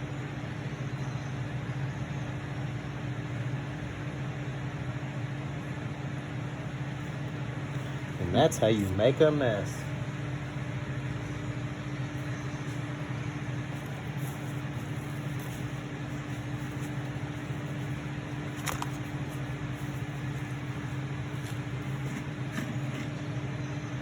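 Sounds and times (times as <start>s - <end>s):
motor or fan humming: 0.0s - 24.0s
sharp click: 18.6s - 19.0s.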